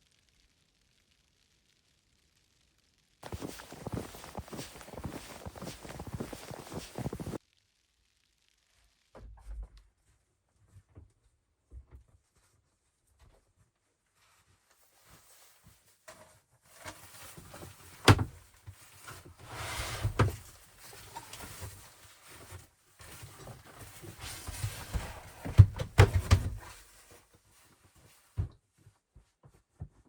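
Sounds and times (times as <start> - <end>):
rustling and scraping: 3.2 - 7.4, 14.2 - 29.0.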